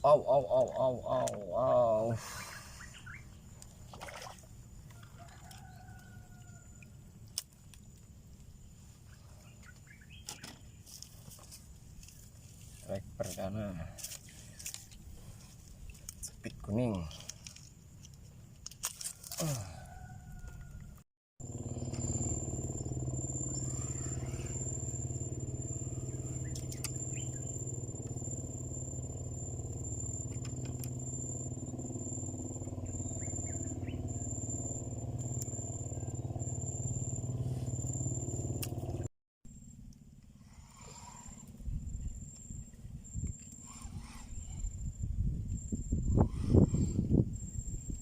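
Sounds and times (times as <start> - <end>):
steady engine drone: 0.0 - 6.0, 21.4 - 48.0.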